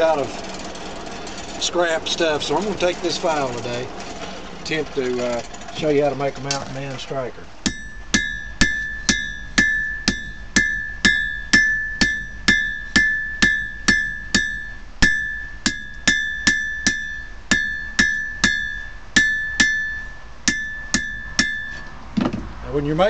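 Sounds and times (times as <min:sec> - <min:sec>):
hammer ringing on anvil: 0:07.6 - 0:22.0.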